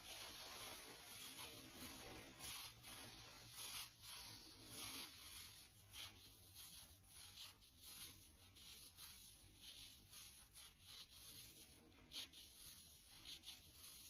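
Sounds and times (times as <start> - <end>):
nylon stockings swishing: 0.0 - 8.9.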